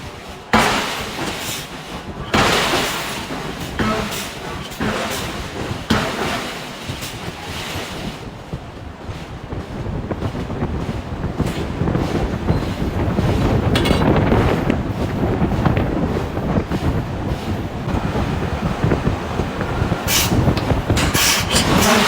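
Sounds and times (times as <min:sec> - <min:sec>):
heavy machinery rumbling: 0:09.5 - 0:22.0
sharp metallic knocks: 0:13.7 - 0:14.4.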